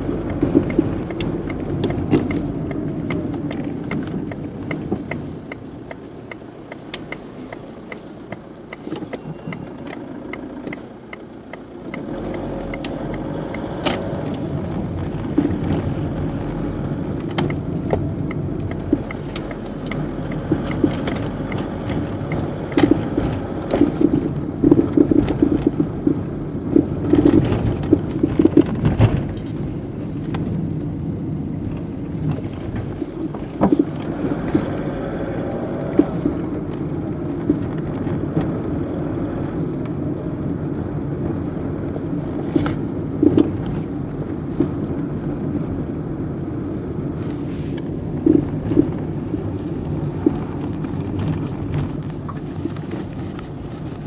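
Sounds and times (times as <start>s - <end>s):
suspension knocking: 0.0s - 30.8s
road and engine noise: 0.0s - 54.0s.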